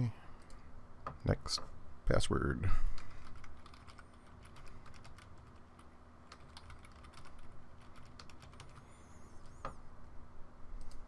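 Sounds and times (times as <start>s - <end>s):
faint keyboard typing: 2.9s - 9.8s, 10.8s - 11.0s.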